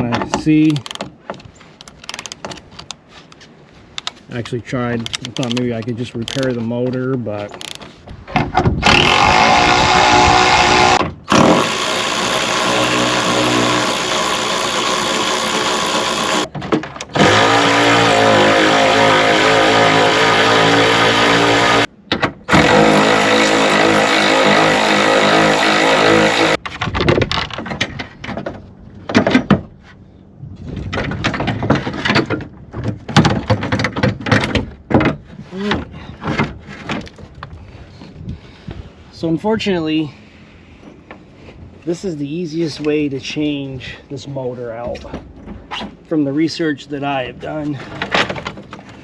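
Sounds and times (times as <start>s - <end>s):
power tool motor running: 8.8s - 16.5s, 17.2s - 21.9s, 22.5s - 26.6s.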